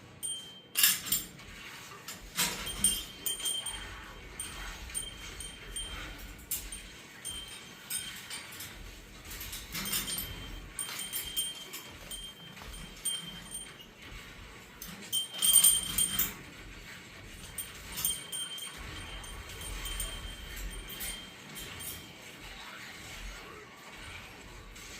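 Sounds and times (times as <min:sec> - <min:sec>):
small metal bell ringing: 0:00.1 - 0:01.7, 0:02.3 - 0:22.4.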